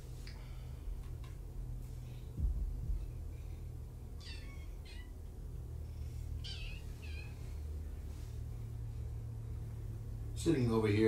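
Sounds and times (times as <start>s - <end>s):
steady low hum: 0.0s - 11.0s
low thumps: 1.0s - 4.2s
kitten meowing: 4.2s - 5.3s, 6.4s - 7.4s.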